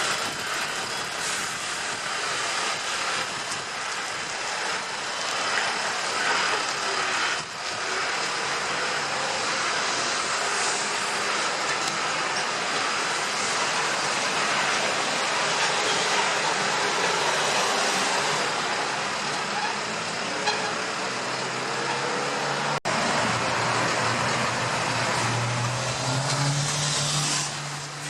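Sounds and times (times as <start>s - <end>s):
road vehicle rushing noise: 0.0s - 28.0s.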